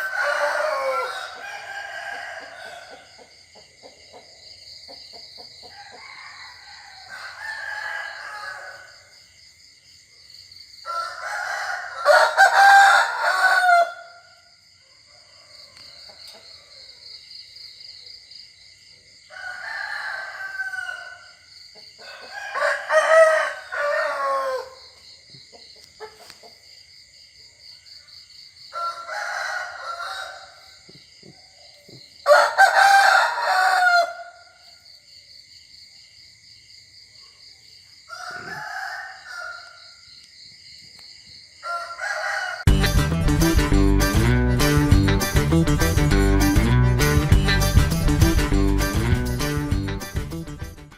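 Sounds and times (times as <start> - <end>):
roosters crowing: 0.0 - 4.3, 5.3 - 9.2, 10.8 - 17.1, 19.2 - 25.0, 28.7 - 34.6, 38.1 - 40.1, 41.6 - 42.8.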